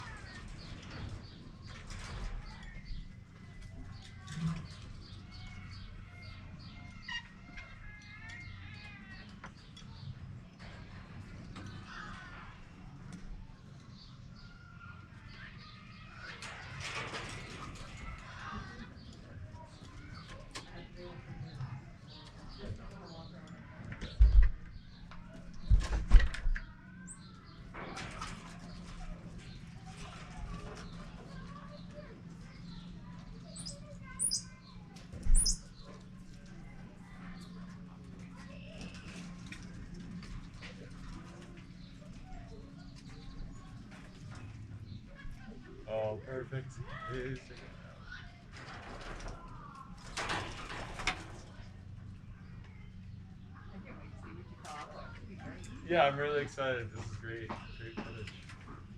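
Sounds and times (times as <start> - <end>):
monkeys chirping and peeping: 28.8 - 45.8.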